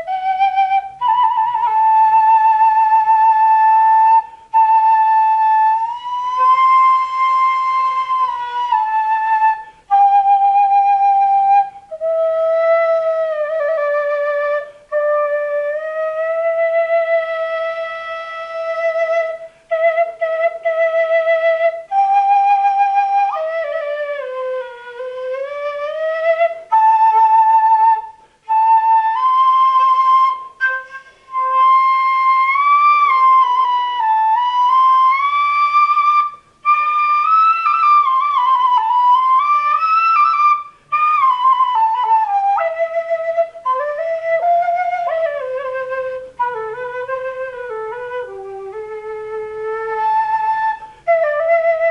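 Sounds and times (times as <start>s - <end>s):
flute solo melody: 0.0s - 51.9s.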